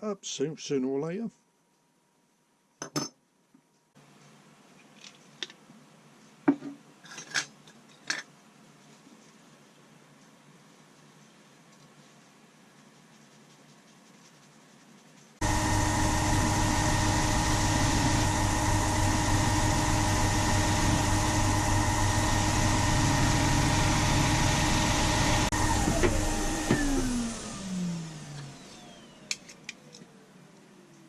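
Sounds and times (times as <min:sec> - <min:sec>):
power tool motor whine: 0:15.4 - 0:29.4.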